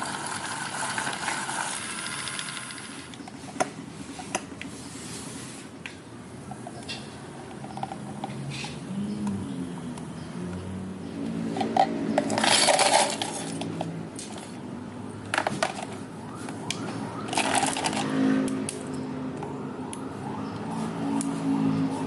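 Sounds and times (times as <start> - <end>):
rattling bursts: 11.6 - 14.4.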